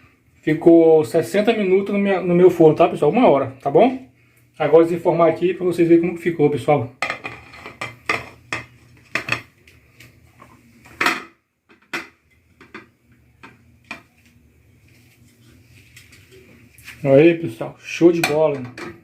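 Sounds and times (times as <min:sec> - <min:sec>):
cake pan knocking: 0:07.0 - 0:09.5.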